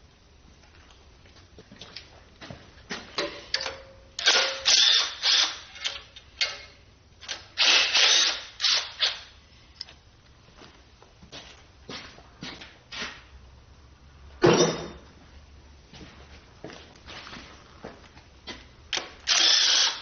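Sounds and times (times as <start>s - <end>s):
power tool bursts: 4.2s - 6.0s, 7.6s - 9.2s, 19.2s - 20.0s.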